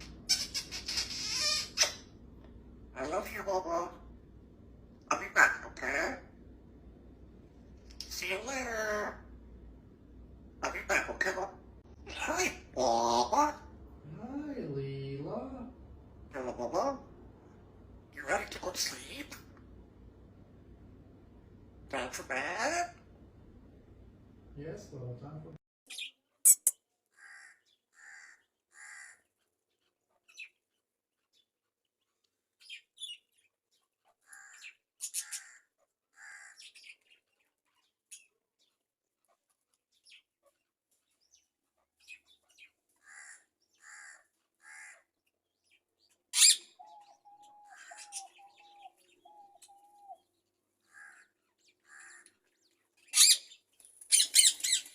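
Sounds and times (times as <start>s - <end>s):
shrill parrot squawks: 0.0s - 2.1s, 5.1s - 6.3s, 25.9s - 29.3s, 34.2s - 37.0s, 43.0s - 45.1s, 46.3s - 50.2s, 50.9s - 52.3s, 53.1s - 54.9s
parrots calling: 0.0s - 4.2s, 5.0s - 6.6s, 7.8s - 9.4s, 10.4s - 19.8s, 21.6s - 23.2s, 25.9s - 30.6s, 32.6s - 38.7s, 39.3s - 54.9s.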